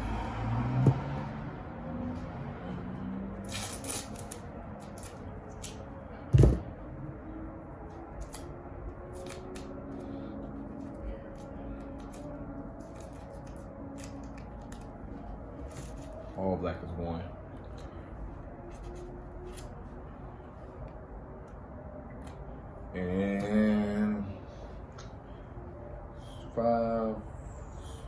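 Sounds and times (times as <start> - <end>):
loud thump: 0.8 - 1.1, 6.3 - 6.8
wires and plastic connectors rustling: 8.0 - 16.4.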